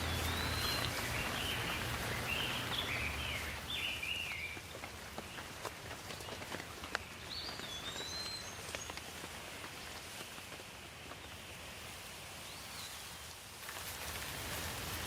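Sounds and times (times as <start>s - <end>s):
bird whistled calls: 0.0s - 4.6s, 7.3s - 9.0s
raindrops ticking on a surface: 0.0s - 15.0s
steady rain: 0.0s - 15.0s.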